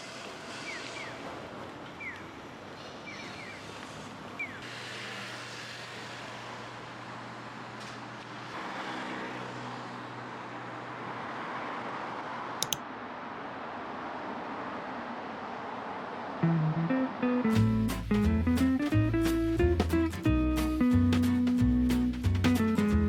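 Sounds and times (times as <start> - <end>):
sharp clicks: 12.6 - 12.8.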